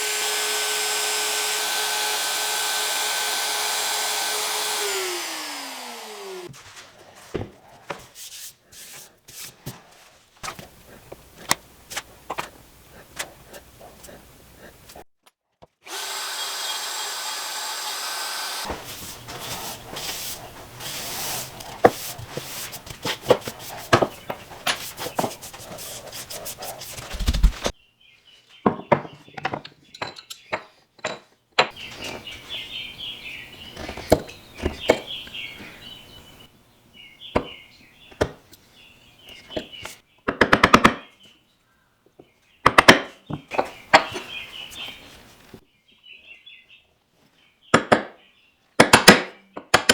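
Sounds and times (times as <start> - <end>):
power tool running: 0.0 - 6.5, 15.8 - 24.1
light scraping of wood: 18.7 - 27.7.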